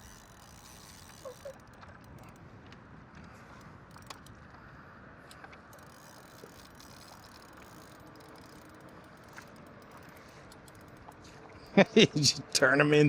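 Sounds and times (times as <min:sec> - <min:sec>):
fishing reel clicking: 0:00.0 - 0:02.4, 0:03.6 - 0:04.6, 0:05.7 - 0:11.8
water and wind hiss: 0:00.0 - 0:13.0.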